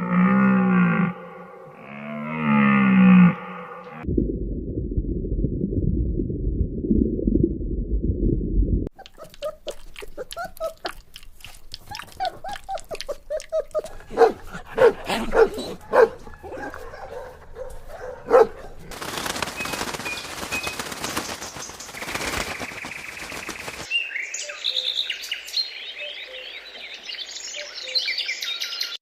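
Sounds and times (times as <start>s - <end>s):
muffled low rumbling: 4.0s - 8.9s
dog yipping and barking: 9.0s - 11.0s, 11.8s - 18.9s.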